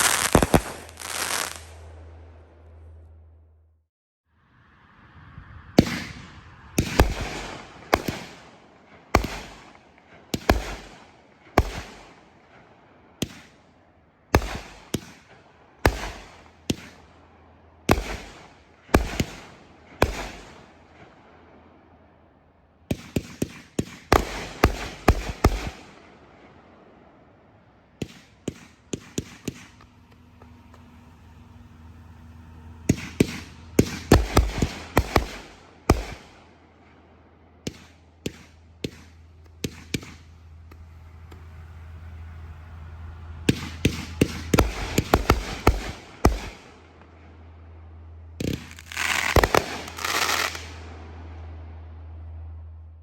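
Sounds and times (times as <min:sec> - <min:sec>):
firework fuse hiss: 0:00.0 - 0:01.8, 0:48.4 - 0:50.8
firework shots: 0:00.0 - 0:03.0, 0:05.8 - 0:31.1, 0:32.2 - 0:42.3, 0:43.4 - 0:52.8.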